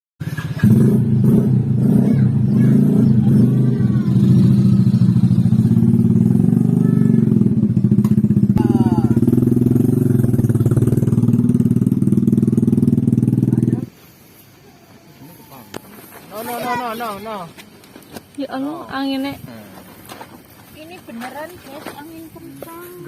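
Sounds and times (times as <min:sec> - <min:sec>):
motorcycle engine running: 0:00.2 - 0:14.0.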